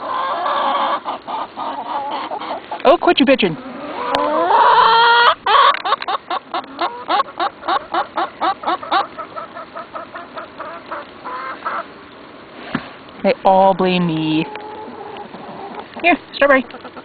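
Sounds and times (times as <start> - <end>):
hen squawking: 0.0 - 11.9
hens clucking: 0.0 - 13.1, 13.8 - 17.0.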